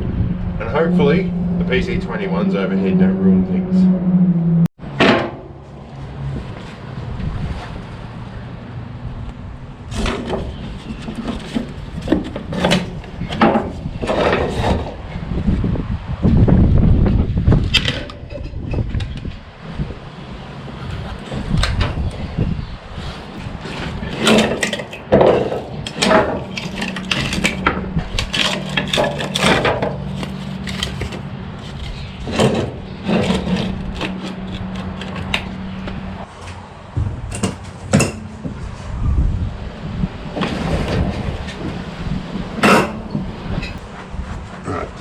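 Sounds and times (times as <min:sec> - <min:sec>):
hand tools clanking on wheel: 0:09.9 - 0:15.0, 0:23.2 - 0:38.8, 0:42.5 - 0:44.0
steady low hum: 0:25.8 - 0:45.0.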